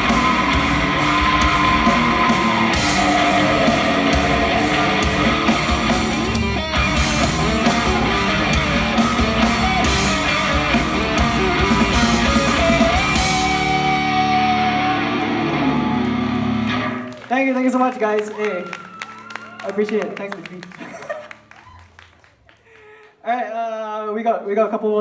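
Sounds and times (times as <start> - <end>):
heavy rock band playing: 0.0 - 17.1.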